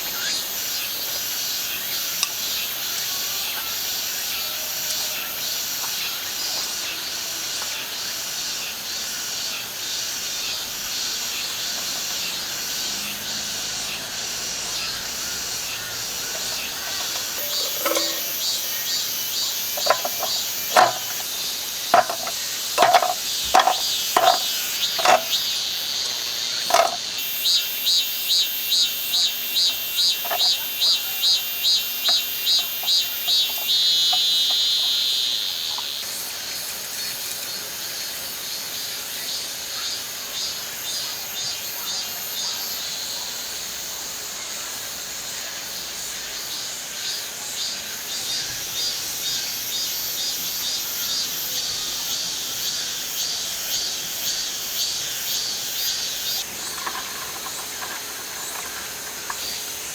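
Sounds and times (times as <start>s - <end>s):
insects chirping chorus: 0.0s - 59.9s
sharp insect calls: 0.0s - 59.9s
insect chirping rhythmically: 5.2s - 36.3s, 47.5s - 59.9s.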